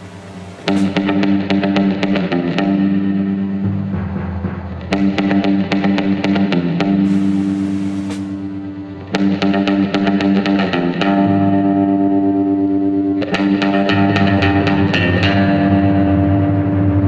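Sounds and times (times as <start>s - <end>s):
distorted plucked guitar: 0.0s - 17.0s
bass line: 13.9s - 17.0s.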